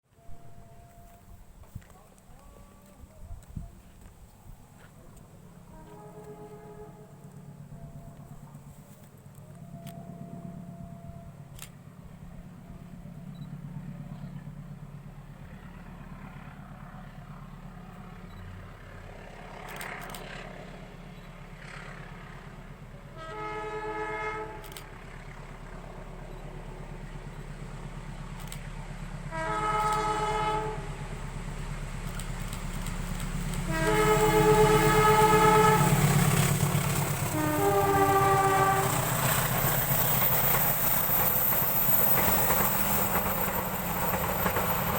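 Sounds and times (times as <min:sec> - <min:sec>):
diesel engine rumble: 0:00.5 - 0:23.3, 0:24.4 - 0:44.9
locomotive horn blasts: 0:05.6 - 0:09.0, 0:23.1 - 0:25.0, 0:29.2 - 0:31.2, 0:33.4 - 0:40.0.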